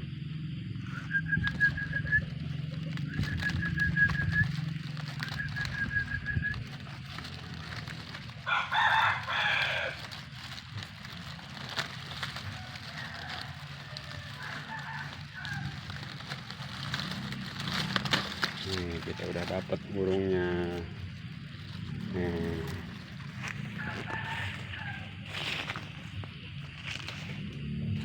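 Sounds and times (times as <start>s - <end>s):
rooster crowing: 6.8s - 21.0s, 21.8s - 26.1s.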